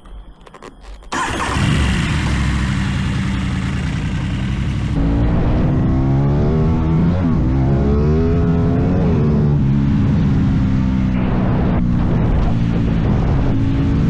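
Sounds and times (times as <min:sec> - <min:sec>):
motorcycle engine revving: 0:01.1 - 0:05.0.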